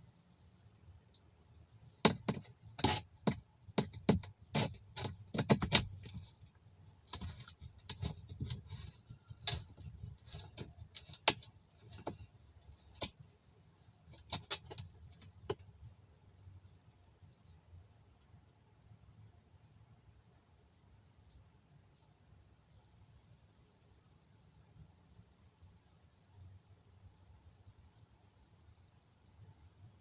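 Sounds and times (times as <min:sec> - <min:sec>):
sharp clicks and knocks: 0:01.1 - 0:15.9.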